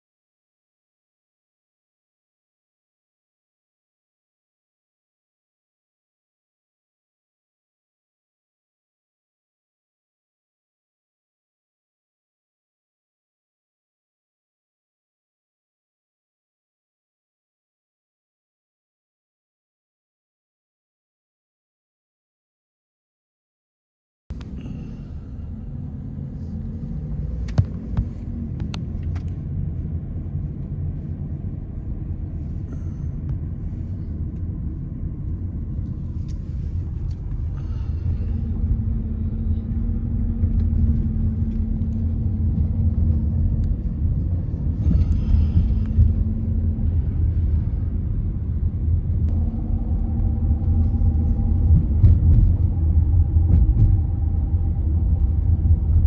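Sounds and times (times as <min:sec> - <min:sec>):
vehicle engine and road rumble: 0:24.3 - 0:56.0.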